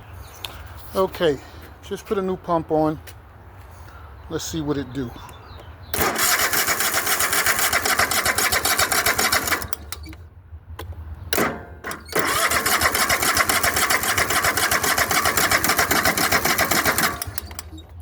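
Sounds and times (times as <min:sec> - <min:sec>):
electric starter cranking engine: 0:06.0 - 0:10.2, 0:11.4 - 0:18.0.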